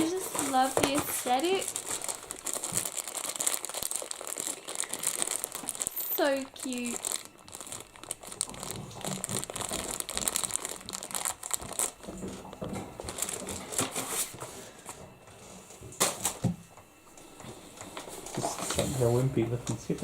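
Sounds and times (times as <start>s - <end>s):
packaging crinkling: 0.0s - 14.8s.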